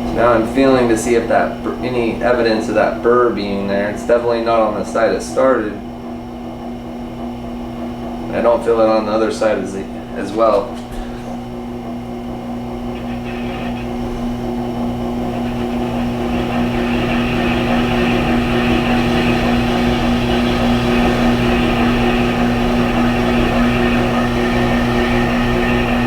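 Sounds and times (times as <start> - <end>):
electric motor humming: 0.0 - 26.0
blade honing hiss: 12.8 - 26.0.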